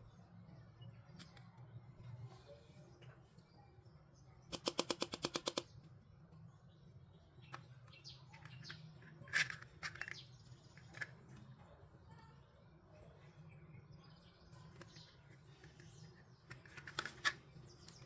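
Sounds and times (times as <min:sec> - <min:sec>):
plastic toys clicking: 0:04.5 - 0:05.7, 0:07.5 - 0:11.5, 0:14.7 - 0:18.0.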